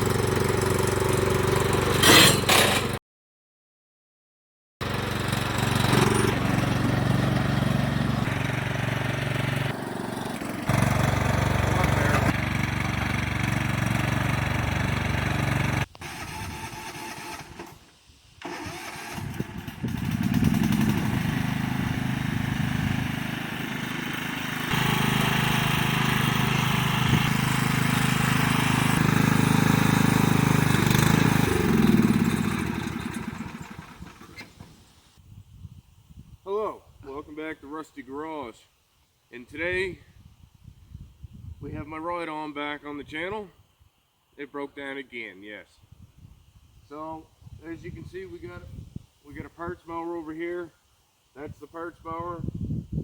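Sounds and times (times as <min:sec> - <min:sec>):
lawn tractor engine running: 0:00.0 - 0:03.0, 0:04.8 - 0:35.0.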